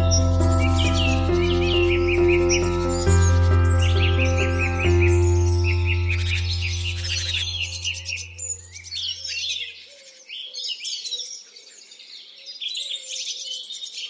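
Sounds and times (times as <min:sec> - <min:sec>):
low music drone: 0:00.0 - 0:09.0
songbirds chirping and singing: 0:00.0 - 0:14.0.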